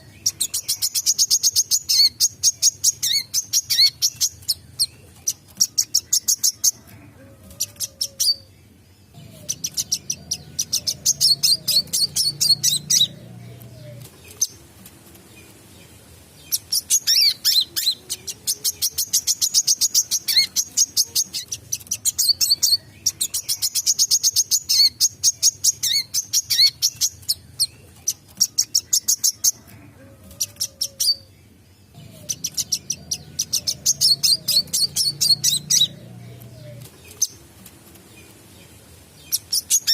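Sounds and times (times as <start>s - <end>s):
bird chattering trills: 9.2s - 14.6s, 16.4s - 29.7s, 31.9s - 37.4s.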